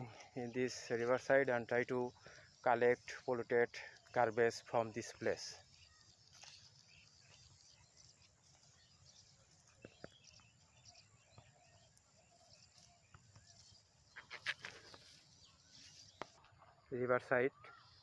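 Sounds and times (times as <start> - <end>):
faint high bird chirps: 0.0 - 18.0
rustling: 14.2 - 16.4.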